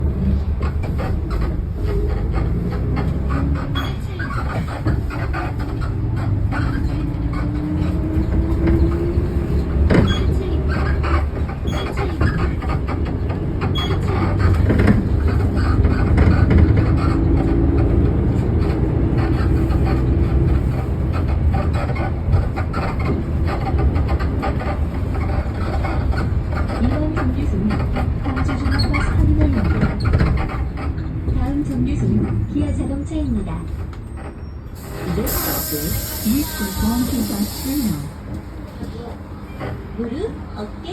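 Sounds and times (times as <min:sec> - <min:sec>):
suspension knocks and rattles: 0:00.0 - 0:32.6
bus engine and road rumble: 0:00.0 - 0:40.9.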